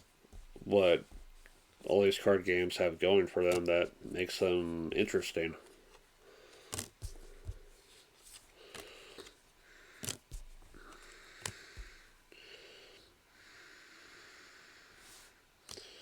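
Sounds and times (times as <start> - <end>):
cards rustling: 3.2 - 4.3, 5.0 - 12.0
trading cards tapping: 6.6 - 7.7, 10.0 - 12.0.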